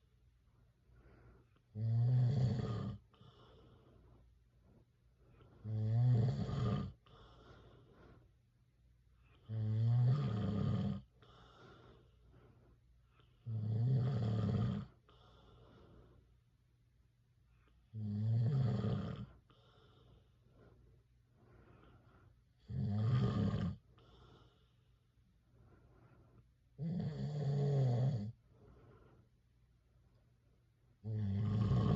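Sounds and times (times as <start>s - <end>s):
faint breathing: 0.0s - 1.8s, 2.9s - 5.8s, 6.9s - 9.5s, 11.0s - 13.5s, 14.8s - 17.9s, 19.2s - 22.6s, 23.8s - 26.8s, 28.3s - 31.0s
man snoring: 1.8s - 3.3s, 5.6s - 7.0s, 9.4s - 11.1s, 13.4s - 15.0s, 17.9s - 19.3s, 22.6s - 23.8s, 26.8s - 28.3s, 31.0s - 31.9s.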